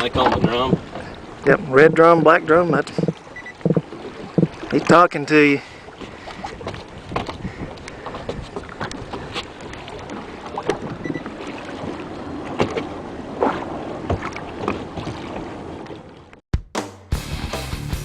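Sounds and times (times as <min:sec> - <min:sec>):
fish drumming: 0:00.0 - 0:05.0.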